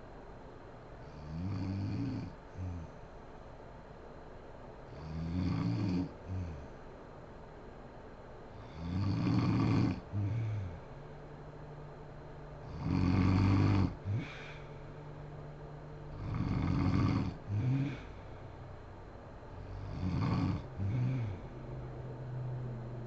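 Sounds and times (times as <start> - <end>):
quiet breathing: 1.0 - 3.6, 4.8 - 7.1, 8.4 - 23.0
woman snoring: 1.1 - 3.0, 4.9 - 6.8, 8.6 - 11.0, 12.6 - 14.8, 16.1 - 18.3, 19.6 - 21.6.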